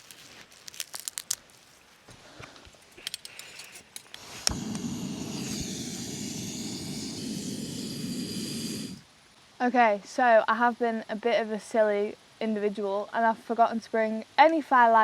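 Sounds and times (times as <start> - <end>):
gas burner hissing: 3.0 - 9.1.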